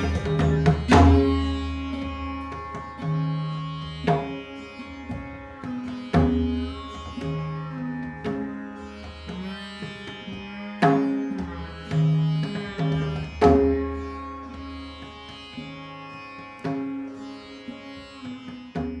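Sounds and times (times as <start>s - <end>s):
plucked string notes sliding: 0.0s - 2.6s.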